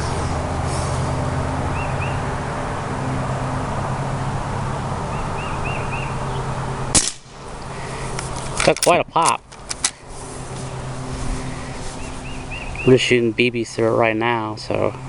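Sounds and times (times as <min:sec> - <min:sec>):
low mechanical hum: 0:00.0 - 0:15.0
air rifle shot pop: 0:07.0 - 0:07.3.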